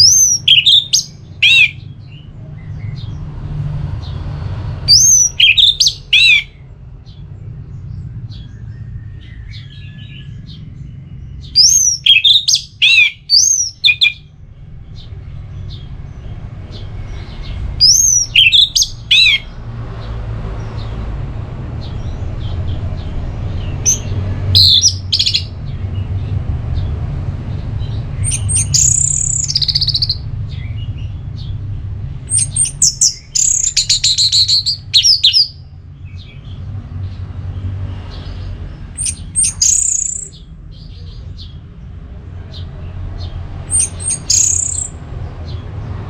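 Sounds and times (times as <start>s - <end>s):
thrush singing whistled notes: 0.0s - 2.3s, 4.9s - 6.7s, 8.3s - 14.3s, 17.2s - 19.6s, 23.6s - 25.6s, 27.8s - 31.5s, 32.3s - 36.4s, 39.0s - 40.9s, 43.7s - 45.0s
low steady rumble: 12.6s - 37.7s.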